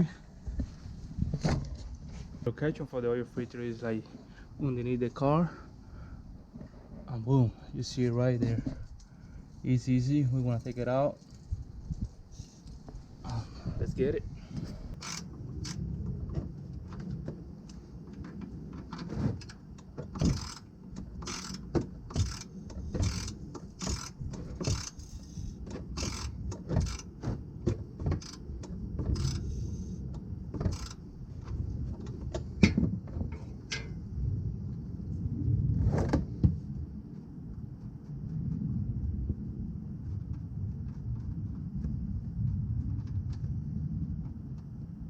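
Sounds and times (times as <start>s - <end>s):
ratchet wrench clicking: 15.0s - 15.8s, 20.2s - 27.1s, 28.2s - 28.4s, 29.1s - 29.7s, 30.7s - 31.0s.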